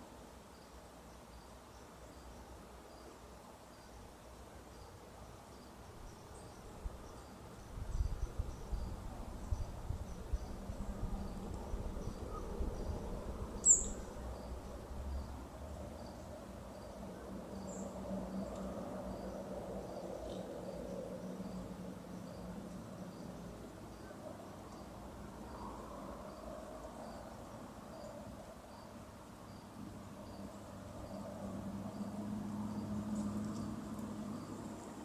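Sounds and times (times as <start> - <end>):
insects chirping: 13.4 - 22.5, 24.0 - 35.0.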